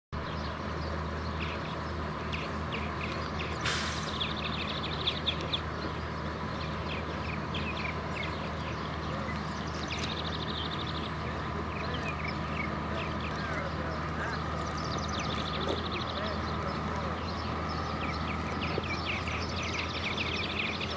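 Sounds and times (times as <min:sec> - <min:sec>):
farm machinery engine running: 0:00.2 - 0:20.9
brief hiss: 0:03.6 - 0:04.2.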